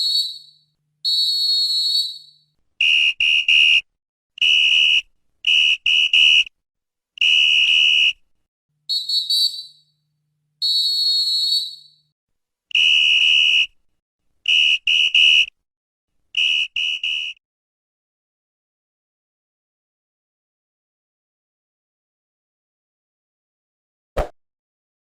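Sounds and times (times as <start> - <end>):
referee's whistle blasts: 8.9 - 9.8, 16.4 - 17.4.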